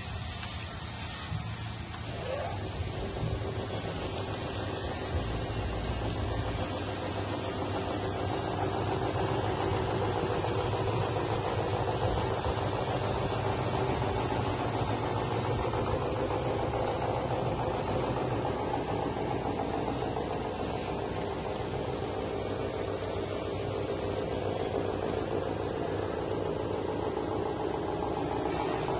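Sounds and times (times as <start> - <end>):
poultry plucking machine humming: 0.0 - 28.9.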